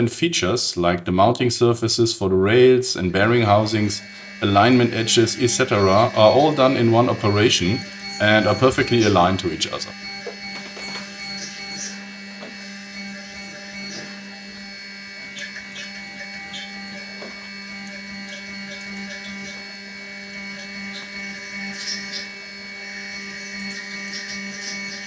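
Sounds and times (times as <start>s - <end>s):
cnc router milling: 2.4s - 25.0s.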